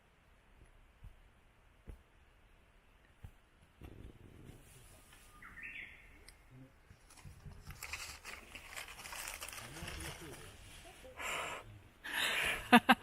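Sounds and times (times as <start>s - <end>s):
rising bird chirp: 5.2s - 6.2s
dry leaves crackling and rustling: 7.0s - 10.9s.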